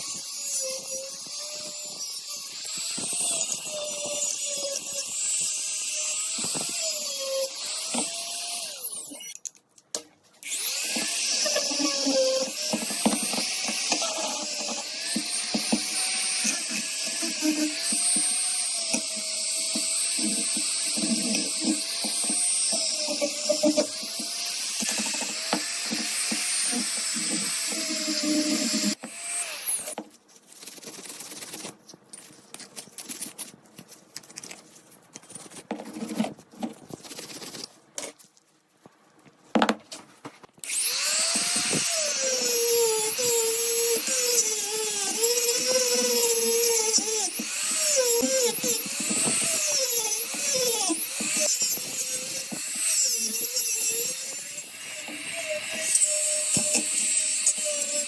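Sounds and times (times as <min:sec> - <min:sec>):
electric power tool whining: 0:00.0 - 0:09.4, 0:10.4 - 0:30.0, 0:40.6 - 0:58.0.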